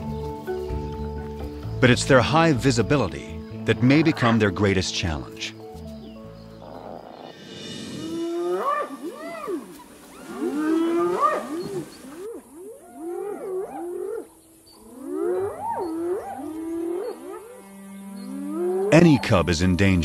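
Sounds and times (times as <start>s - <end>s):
hyenas whooping: 6.6s - 17.6s.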